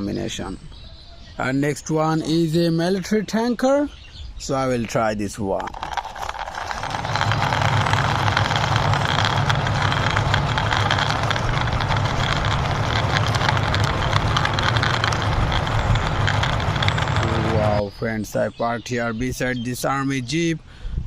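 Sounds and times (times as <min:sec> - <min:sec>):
toy vehicle wheels rolling: 0:05.5 - 0:17.8.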